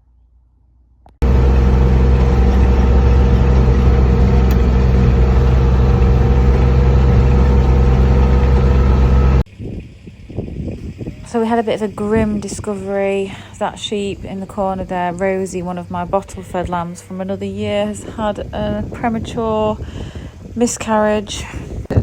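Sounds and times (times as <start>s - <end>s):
engine running steadily: 1.2s - 9.5s.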